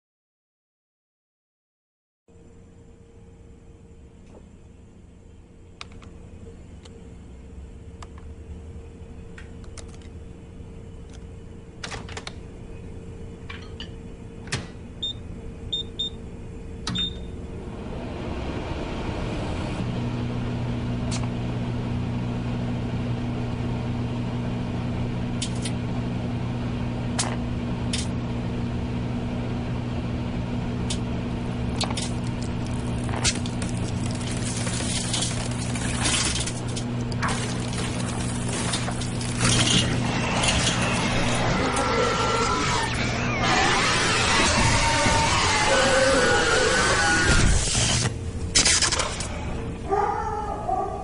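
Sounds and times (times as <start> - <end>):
microwave oven humming: 2.3 - 51.0
microwave keypad beeping: 15.0 - 16.2, 16.9 - 17.3.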